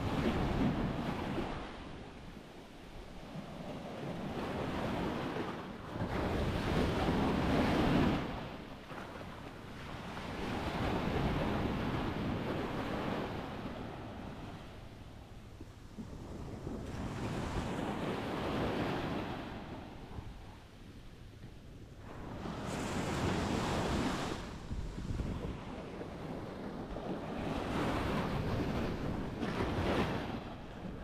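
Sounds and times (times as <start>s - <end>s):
wind buffeting microphone: 0.0s - 31.0s
sea waves washing on beach: 22.0s - 31.0s.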